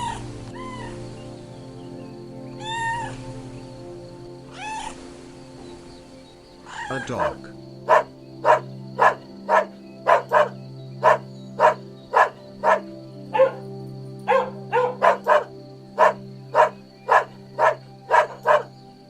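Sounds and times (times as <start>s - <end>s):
background music drone: 0.0s - 19.0s
dog barking: 6.9s - 13.6s, 14.3s - 18.7s.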